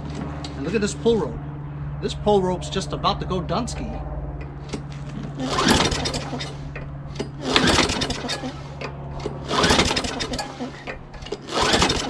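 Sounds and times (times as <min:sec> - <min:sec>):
engine cranking without firing: 0:00.0 - 0:01.4, 0:03.6 - 0:12.0
recoil starter pulls: 0:04.4 - 0:12.0.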